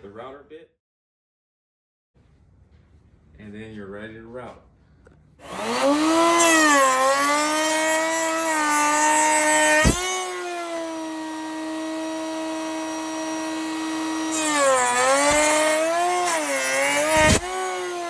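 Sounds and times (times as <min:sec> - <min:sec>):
router bit cutting wood: 0:05.4 - 0:18.0
router whining: 0:05.4 - 0:18.0.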